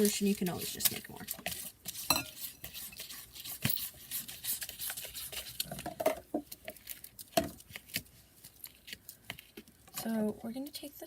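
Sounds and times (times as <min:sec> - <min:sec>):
utensil scraping in a dish: 0:00.0 - 0:06.0.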